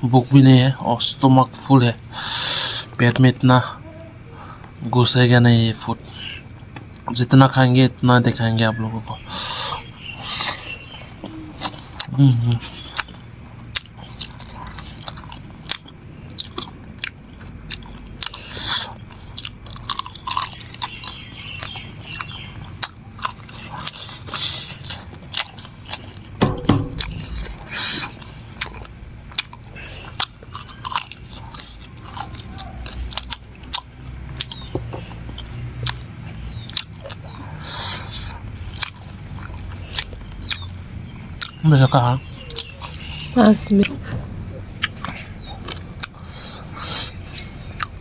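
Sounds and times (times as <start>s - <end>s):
person chewing and crunching: 9.3s - 41.7s, 42.4s - 43.3s, 44.7s - 48.0s.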